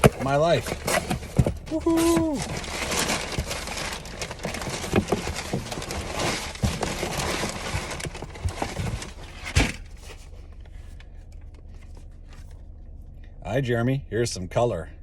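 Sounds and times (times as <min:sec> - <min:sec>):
packaging rustling and crinkling: 0:00.0 - 0:10.6.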